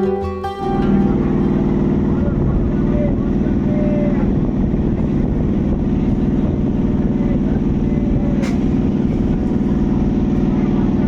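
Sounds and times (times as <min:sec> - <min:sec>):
train wheels rumbling and rattling: 0:04.4 - 0:11.0.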